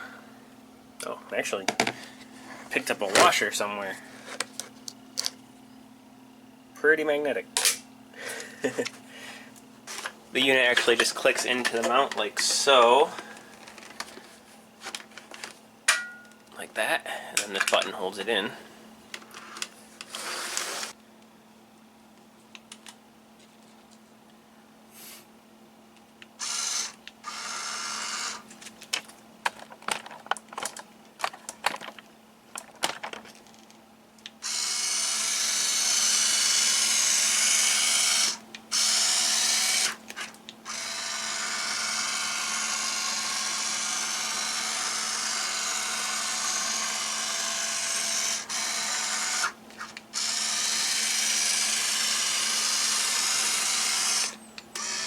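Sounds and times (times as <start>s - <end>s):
electric motors whirring: 19.3s - 21.0s, 26.4s - 28.5s, 34.4s - 55.0s.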